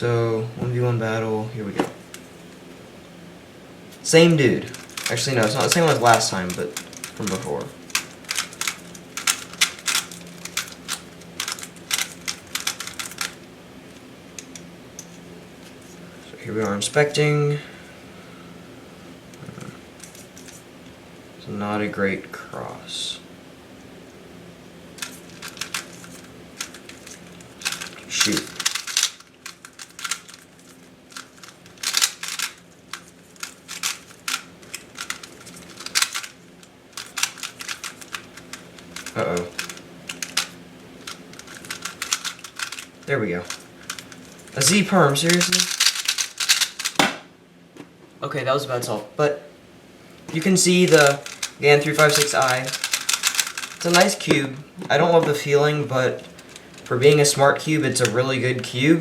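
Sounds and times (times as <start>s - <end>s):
puzzle cube plastic clacking: 4.6s - 13.4s, 25.0s - 47.2s, 50.2s - 55.4s.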